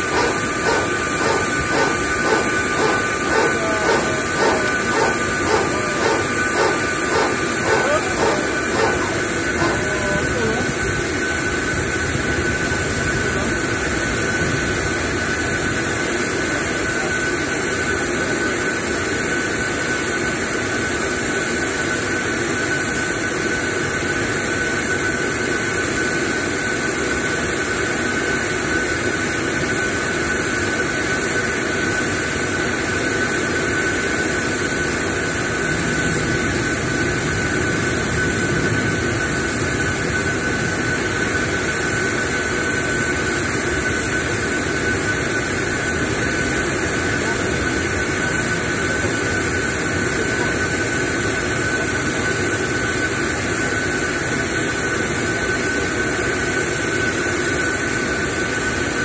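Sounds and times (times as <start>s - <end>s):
jet turbine whine: 0.0s - 59.0s.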